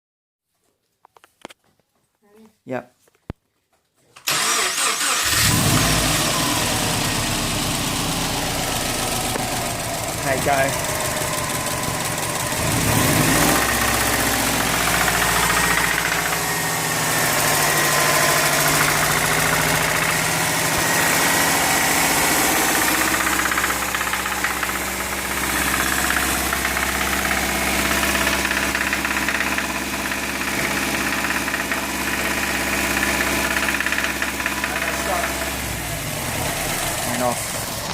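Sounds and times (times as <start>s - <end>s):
car engine revving with knock: 5.3s - 37.9s.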